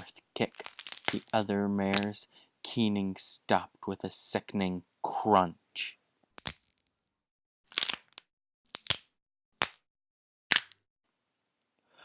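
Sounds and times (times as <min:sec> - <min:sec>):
sharp cracking crunching impacts: 0:00.0 - 0:02.2.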